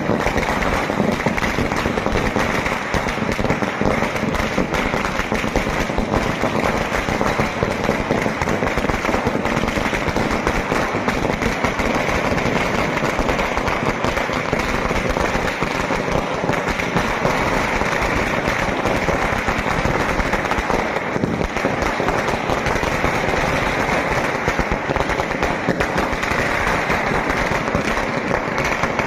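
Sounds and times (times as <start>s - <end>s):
firecrackers crackling: 0.0s - 29.0s.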